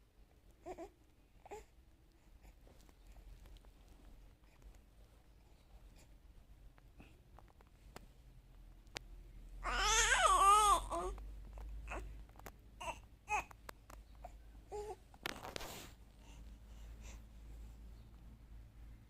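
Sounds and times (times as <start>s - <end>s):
faint small clicks and ticks: 2.6s - 4.9s, 6.7s - 9.2s, 11.1s - 12.6s, 13.4s - 14.2s
baby babbling: 9.6s - 12.2s, 12.8s - 13.5s, 14.2s - 15.0s
baby cooing: 9.6s - 12.2s, 12.8s - 13.6s, 14.2s - 15.0s.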